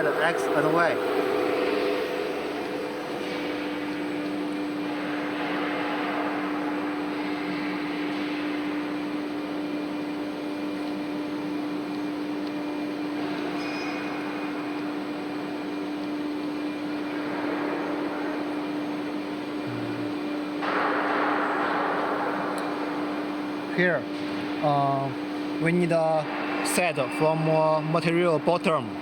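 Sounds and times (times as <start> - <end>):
cnc router humming: 0.0 - 5.2, 17.8 - 20.7.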